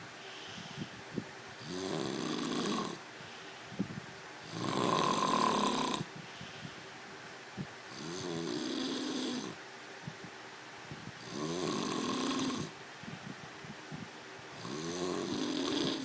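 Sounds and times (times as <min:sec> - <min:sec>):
man snoring: 0:01.6 - 0:03.0, 0:04.4 - 0:06.1, 0:07.9 - 0:09.6, 0:11.2 - 0:12.8, 0:14.6 - 0:16.0.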